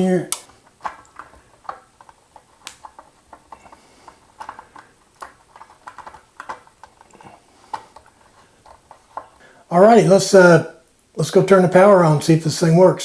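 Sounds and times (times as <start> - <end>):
wires and plastic fittings clicking: 0.0 - 9.5.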